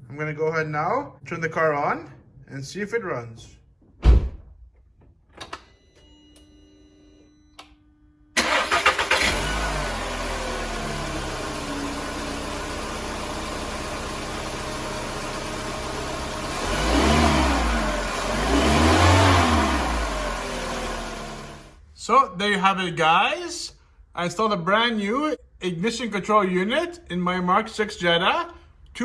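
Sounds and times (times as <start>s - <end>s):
car engine starting and idling: 8.4s - 21.8s
engine revving: 8.4s - 21.8s.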